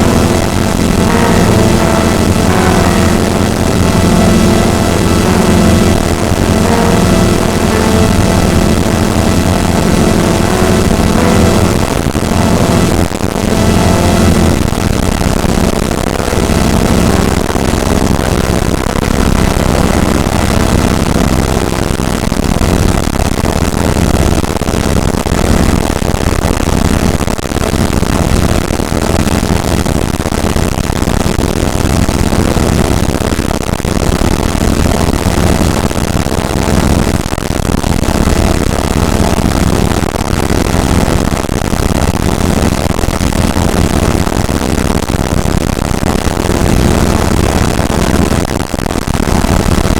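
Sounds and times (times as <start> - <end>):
synthesized low engine rumble: 0.0 - 49.9.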